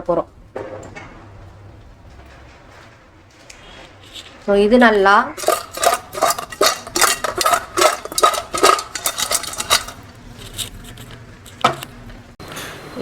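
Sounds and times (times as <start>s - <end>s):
crab pieces clattering in a bowl: 5.4s - 10.7s.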